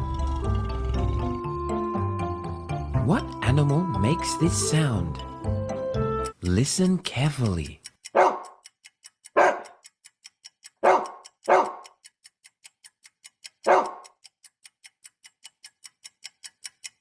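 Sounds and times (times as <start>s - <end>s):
faint steady ticking: 0.0s - 1.6s, 2.5s - 17.0s
dog barking: 8.2s - 8.6s, 9.4s - 9.8s, 10.8s - 11.8s, 13.6s - 14.0s.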